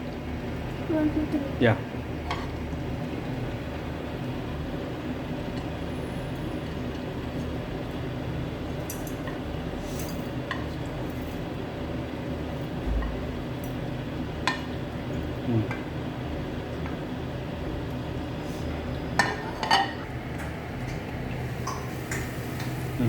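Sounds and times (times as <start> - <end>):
utensils clinking: 19.2 - 20.1.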